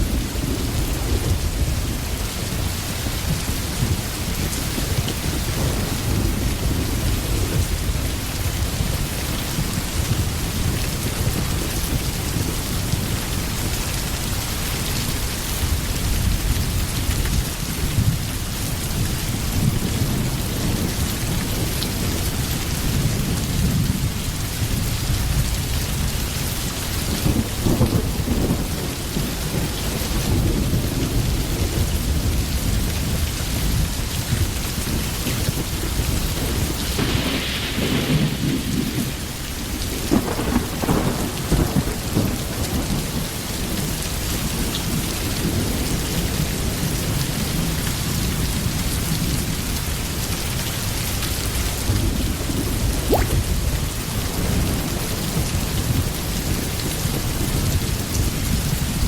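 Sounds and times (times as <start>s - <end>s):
steady rain: 0.0s - 59.0s
thunder rumbling: 35.5s - 43.0s, 51.9s - 55.8s.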